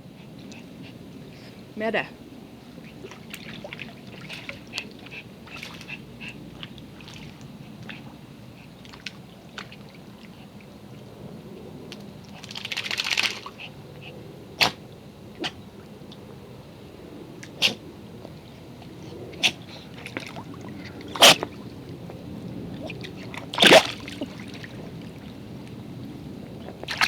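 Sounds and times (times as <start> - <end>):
water sloshing and splashing: 2.2 - 27.0
dog sneezing: 14.6 - 14.8, 15.4 - 15.6, 17.6 - 17.8, 19.4 - 19.6, 21.2 - 21.5
dog snorting: 17.6 - 17.8, 19.3 - 20.0, 21.1 - 21.5.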